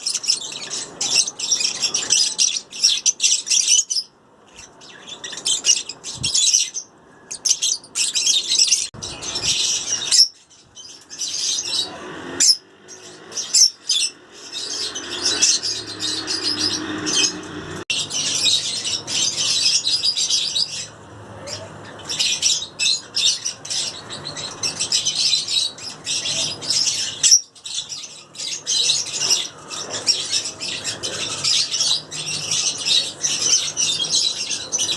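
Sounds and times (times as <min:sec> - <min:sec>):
lovebirds chirping: 0:00.0 - 0:34.9.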